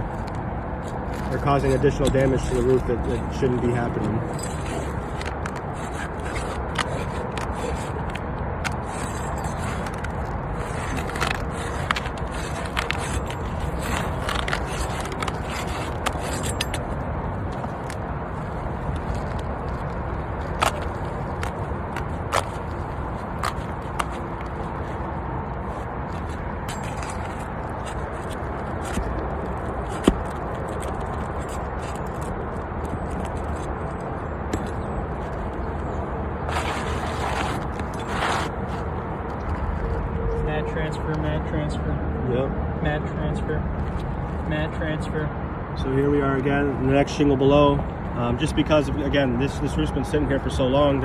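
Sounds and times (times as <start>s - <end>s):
sharp clicks and scrapes: 0.0s - 40.0s
steady background noise: 0.0s - 51.0s
shingles being pried and scraped: 1.1s - 18.0s, 20.5s - 24.8s, 25.6s - 35.6s, 36.4s - 38.8s.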